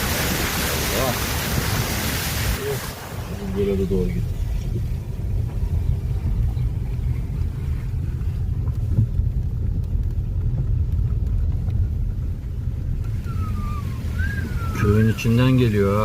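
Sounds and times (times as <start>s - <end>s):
car engine and road noise: 0.0s - 16.0s.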